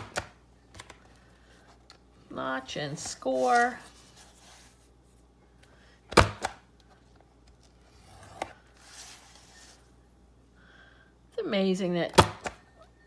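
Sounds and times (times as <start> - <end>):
faint paper rustle: 2.6 - 5.9, 7.0 - 10.0.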